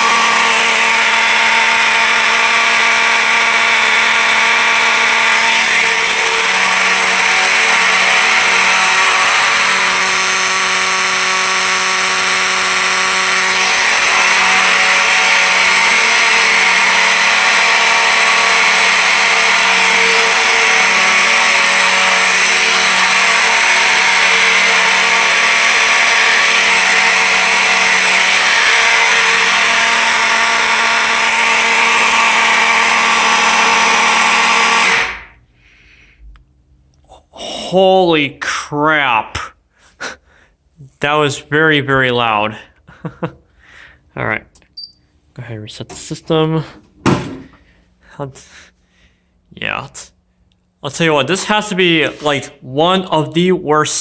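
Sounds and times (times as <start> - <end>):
fire alarm horns buzzing: 0.0 - 35.4.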